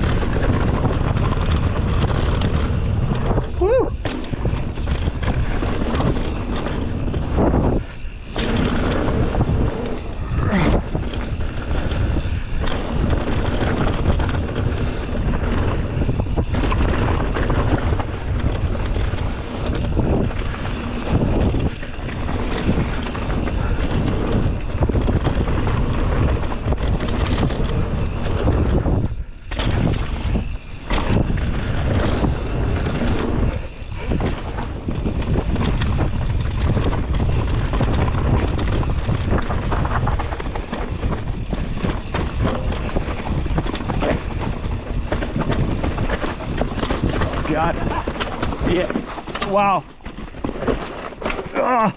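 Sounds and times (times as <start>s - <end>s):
bike rattling and knocking: 0.0s - 51.9s
wind rushing over microphone: 0.0s - 51.9s.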